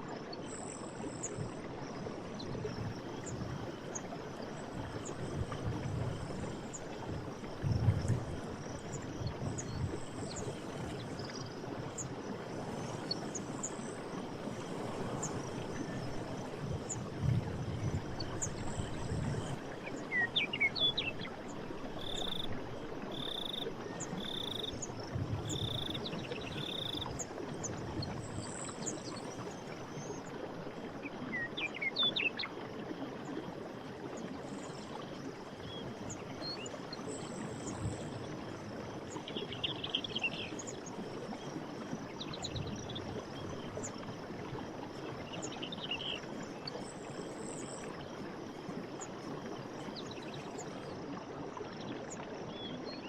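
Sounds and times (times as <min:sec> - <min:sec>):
stream water running: 0:00.0 - 0:53.0.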